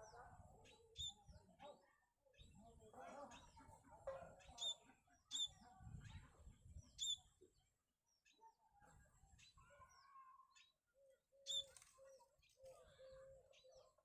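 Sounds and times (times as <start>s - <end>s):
small birds chirping: 4.4s - 5.6s, 9.3s - 14.0s.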